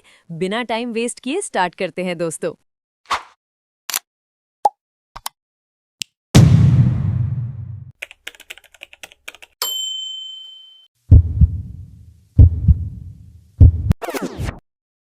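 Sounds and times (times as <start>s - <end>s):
deep boom: 6.4s - 7.9s
high ding: 9.6s - 10.9s
heavy low double thumps: 11.1s - 14.0s.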